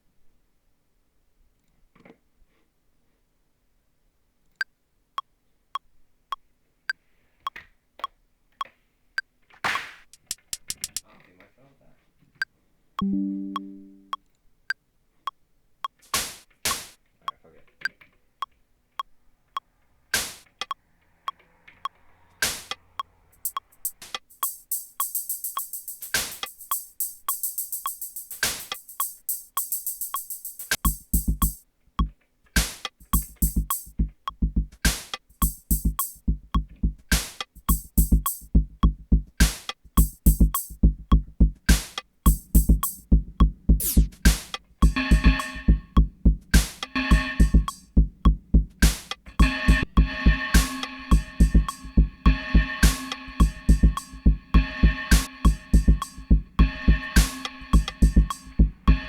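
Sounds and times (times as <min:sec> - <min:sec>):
drum machine beat: 0:10.2 - 0:11.0, 0:13.0 - 0:14.2, 0:22.4 - 0:59.0
rattling hi-hats: 0:22.4 - 0:59.0
heavy kick and bass: 0:24.4 - 0:32.1, 0:33.0 - 0:59.0.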